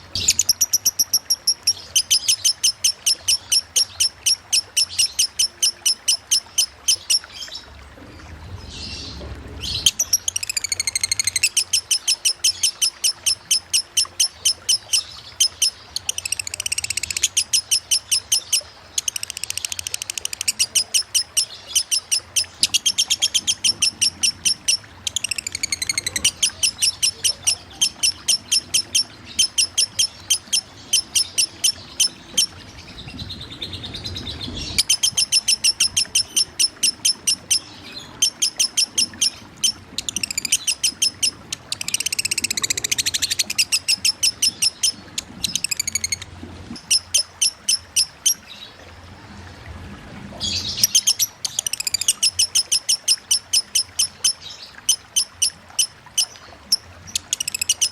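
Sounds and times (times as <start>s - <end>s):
running water: 0.0s - 57.9s
lovebird chattering: 0.1s - 7.3s, 9.7s - 32.6s, 34.5s - 48.4s, 50.4s - 57.9s
bird gliding calls: 8.9s - 48.4s, 50.4s - 57.9s.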